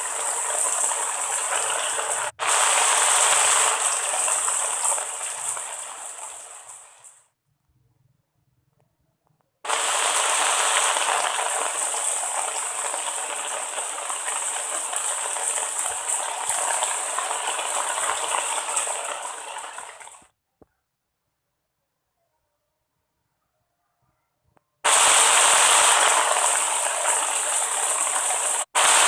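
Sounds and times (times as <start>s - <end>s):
rushing water: 0.0s - 7.1s, 9.7s - 20.2s, 24.9s - 29.0s.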